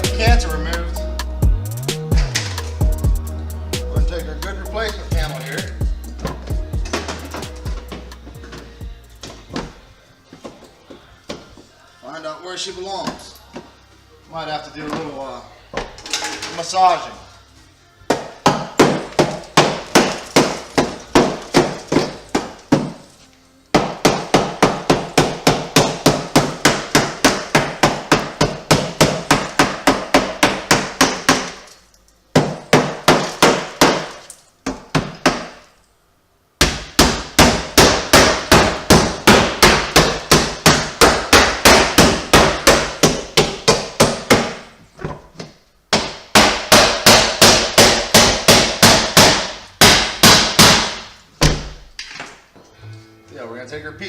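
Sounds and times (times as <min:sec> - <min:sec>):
hammer on sheet metal: 0:46.0 - 0:51.1.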